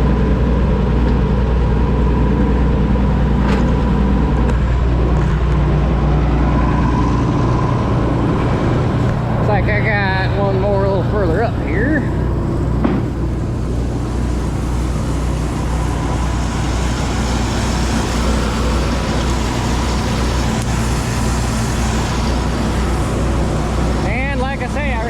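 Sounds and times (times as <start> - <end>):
combine engine drone: 0.0 - 25.0
threshing works rushing: 0.0 - 25.0.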